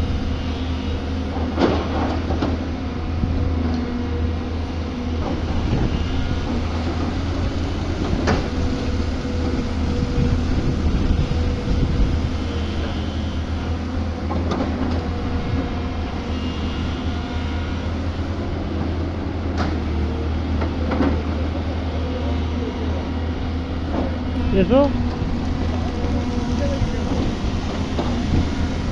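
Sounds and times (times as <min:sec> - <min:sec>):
diesel engine humming: 0:00.0 - 0:28.9.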